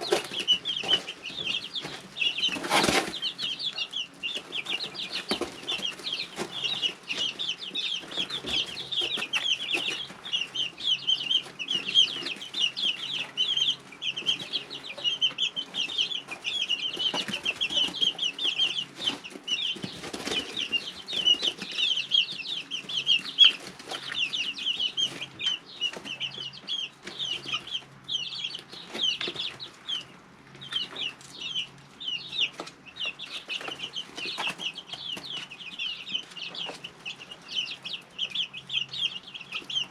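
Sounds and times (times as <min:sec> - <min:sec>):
chicks moving and rustling: 0:00.0 - 0:39.9
chicks peeping: 0:00.0 - 0:39.9.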